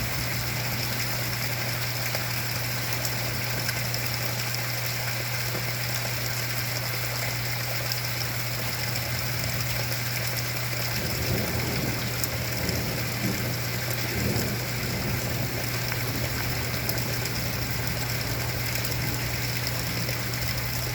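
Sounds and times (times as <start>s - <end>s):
heavy rain pouring: 0.0s - 20.9s
low rumble of thunder: 10.8s - 20.9s.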